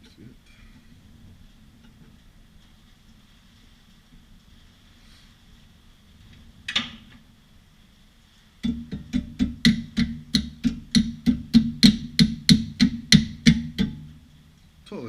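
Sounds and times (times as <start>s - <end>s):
hammer striking metal: 8.6s - 14.3s.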